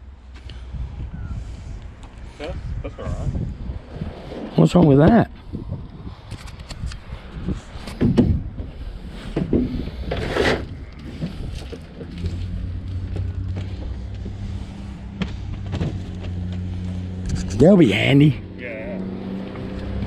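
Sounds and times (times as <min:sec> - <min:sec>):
vehicle engine humming: 0:00.0 - 0:20.0
junk knocking and clunking: 0:07.9 - 0:12.4, 0:15.1 - 0:16.8.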